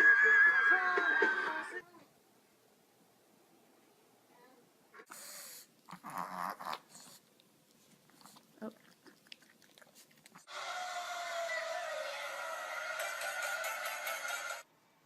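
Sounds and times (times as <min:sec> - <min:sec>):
pet animal wheezing: 0:05.0 - 0:05.8.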